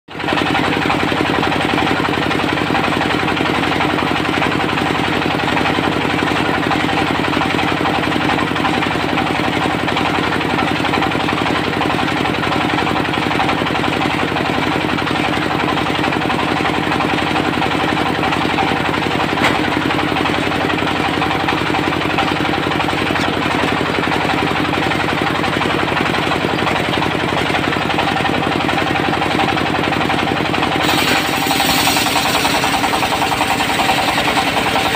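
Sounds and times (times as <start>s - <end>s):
diesel engine running steadily: 0.1s - 34.9s.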